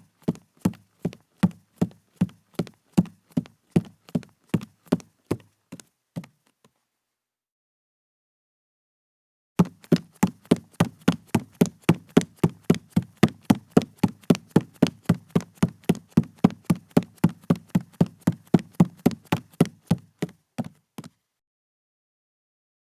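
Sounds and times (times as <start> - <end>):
barefoot footsteps on wooden floor: 9.6 - 20.0.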